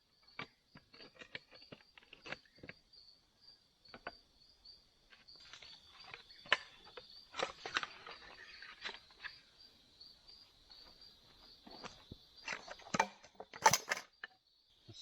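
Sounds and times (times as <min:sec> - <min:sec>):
insects chirring: 0:00.0 - 0:15.0
sticks or gear knocking and rustling: 0:12.8 - 0:14.1.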